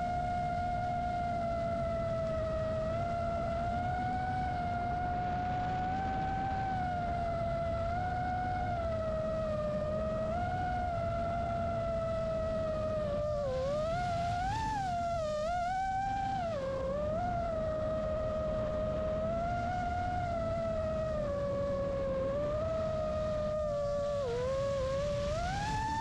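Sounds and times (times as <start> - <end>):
wind rumble on microphone: 0.0 - 26.0.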